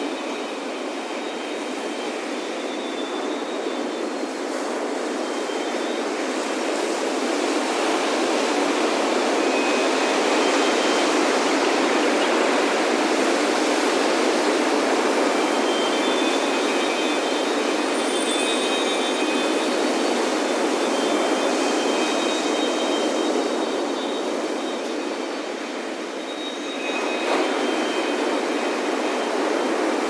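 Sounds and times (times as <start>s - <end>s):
ocean surf on beach: 0.0s - 30.0s.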